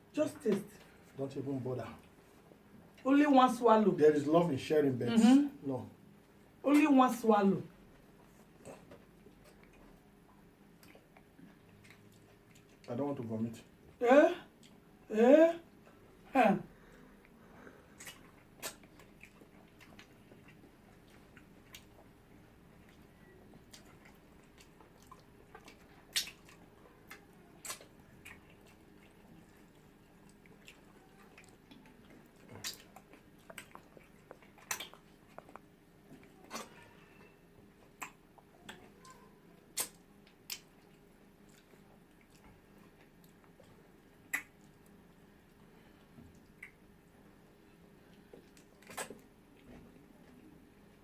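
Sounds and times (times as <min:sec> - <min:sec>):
wet chewing and mouth smacks: 0:07.9 - 0:12.9, 0:14.5 - 0:14.9, 0:17.2 - 0:51.0.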